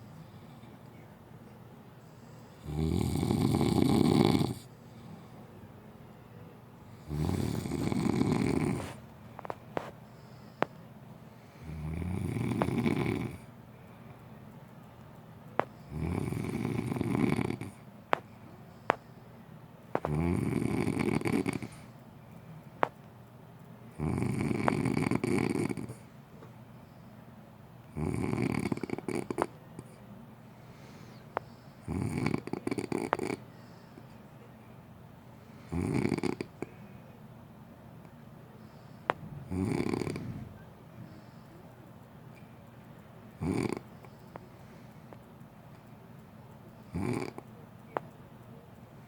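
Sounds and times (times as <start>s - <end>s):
person snoring: 2.6s - 4.7s, 7.0s - 9.0s, 11.6s - 13.5s, 15.9s - 17.8s, 20.0s - 21.9s, 24.0s - 26.0s, 27.9s - 29.5s, 31.8s - 33.4s, 35.7s - 36.7s, 39.4s - 40.6s, 43.4s - 43.8s, 46.9s - 47.4s
faint clicks: 41.1s - 49.0s.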